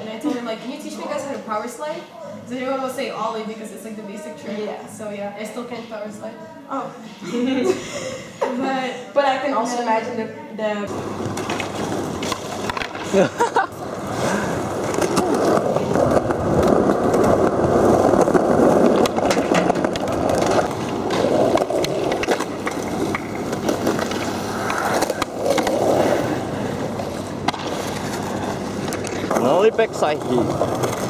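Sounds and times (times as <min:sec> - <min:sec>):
skateboard clicks and knocks: 0:10.9 - 0:31.0
skateboard wheels rumbling: 0:10.9 - 0:31.0.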